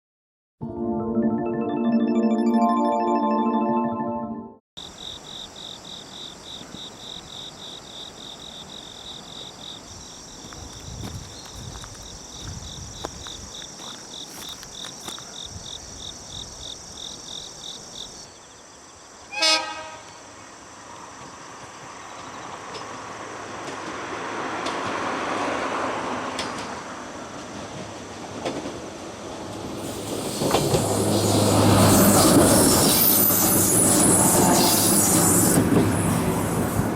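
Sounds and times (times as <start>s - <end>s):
insects chirping: 4.8s - 19.4s, 29.6s - 36.9s
train horn blast: 19.3s - 20.3s.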